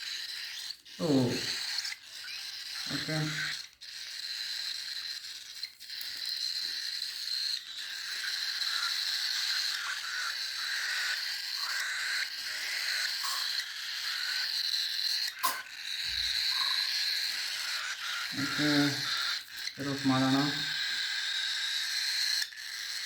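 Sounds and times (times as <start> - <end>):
chicks begging calls: 0.0 - 23.0.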